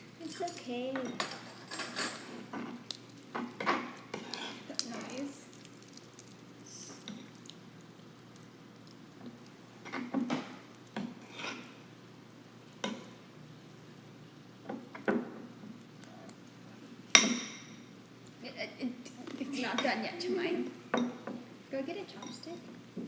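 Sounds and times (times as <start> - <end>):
spoon clinking and scraping bowl: 0.2 - 2.7.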